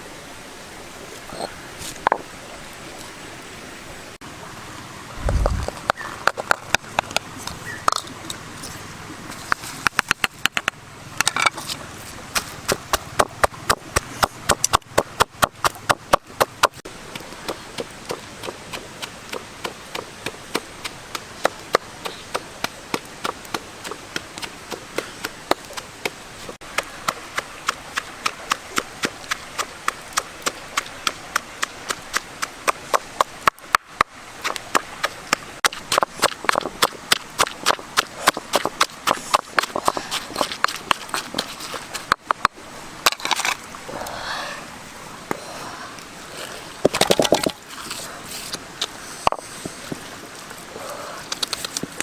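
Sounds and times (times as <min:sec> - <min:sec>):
blade chopping on wood: 0:12.3 - 0:43.5.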